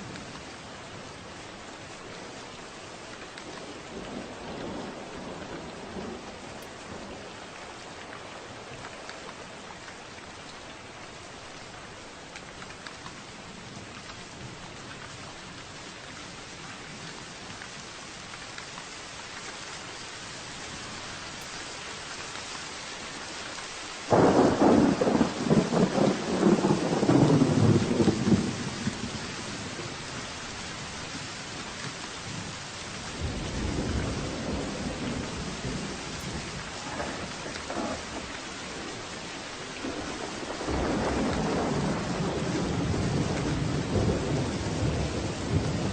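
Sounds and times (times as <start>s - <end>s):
steady rain: 0.0s - 45.9s
thunder rumbling: 24.1s - 45.9s.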